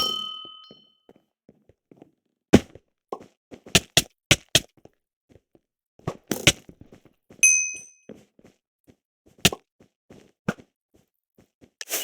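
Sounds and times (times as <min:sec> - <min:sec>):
sharp knocks and thunks: 0:02.6 - 0:04.7.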